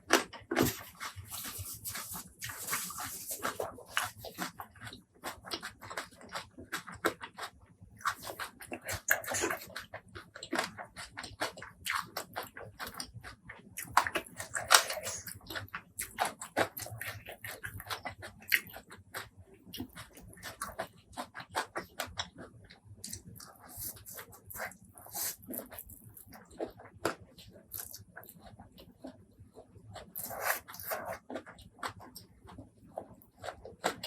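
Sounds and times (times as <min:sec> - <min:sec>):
wet chewing: 0:00.1 - 0:34.0.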